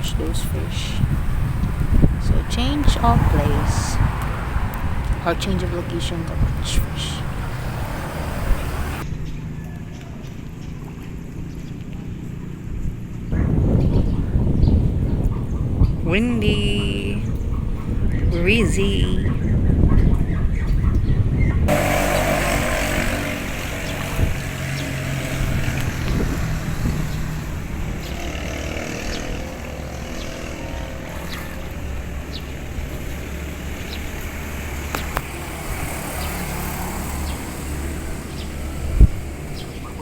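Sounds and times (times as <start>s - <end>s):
wind noise on microphone: 0.0s - 9.4s, 12.6s - 40.0s
small engine running: 5.6s - 9.0s, 21.7s - 31.6s.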